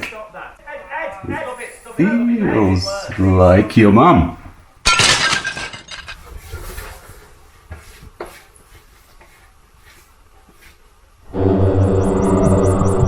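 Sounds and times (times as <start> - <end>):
music with low pulse: 11.3 - 13.0.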